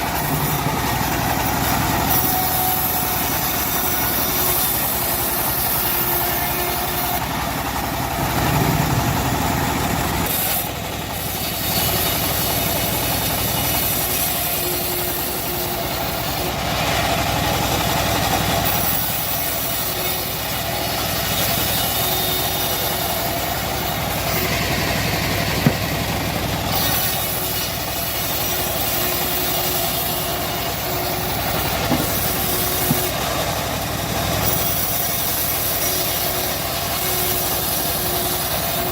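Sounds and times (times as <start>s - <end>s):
bandsaw mill sawing log: 0.0s - 38.9s
sharp knock: 25.6s - 26.0s, 31.9s - 32.2s.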